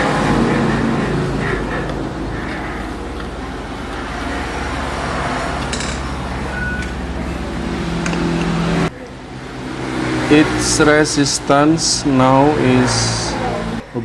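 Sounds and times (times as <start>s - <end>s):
hot air station blowing: 6.3s - 14.0s.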